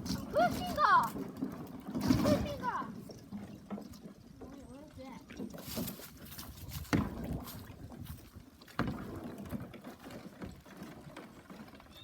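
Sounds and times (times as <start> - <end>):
kayak knocking against ice: 5.5 - 11.4.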